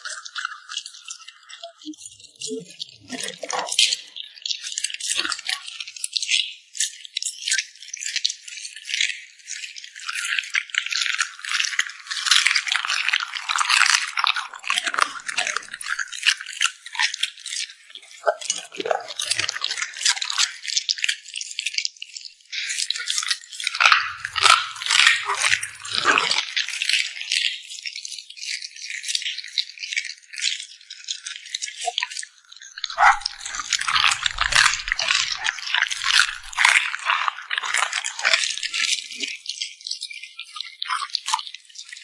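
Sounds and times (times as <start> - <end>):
dog chewing food crunchily: 32.8 - 39.0.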